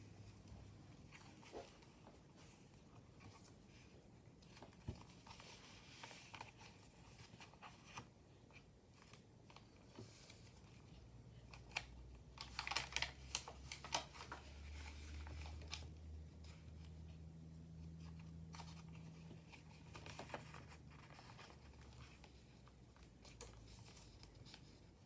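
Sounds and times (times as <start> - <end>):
paper rustling: 0.3 - 16.9, 18.0 - 25.0
page flaps and crinkles: 11.5 - 16.0, 18.2 - 22.4.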